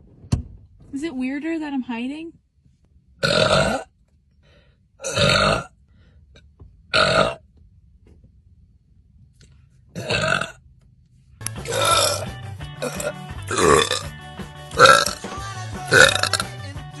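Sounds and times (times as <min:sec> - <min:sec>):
woman burping loudly: 0:03.2 - 0:04.0, 0:05.0 - 0:05.8, 0:06.9 - 0:07.4, 0:10.0 - 0:10.6, 0:11.6 - 0:14.1, 0:14.8 - 0:15.2, 0:15.9 - 0:16.6
background music: 0:11.4 - 0:17.0.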